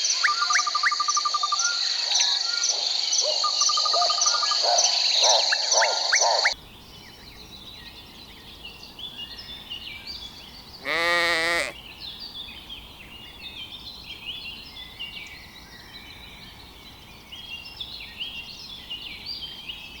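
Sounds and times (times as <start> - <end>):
small birds chirping: 0.0 - 20.0
sheep bleating: 10.8 - 11.8.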